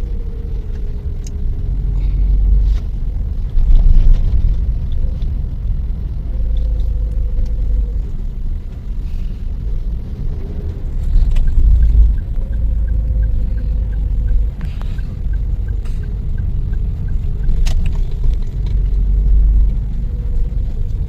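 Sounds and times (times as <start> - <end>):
car engine and road noise: 0.0 - 21.0
faint regular ticking: 4.8 - 21.0.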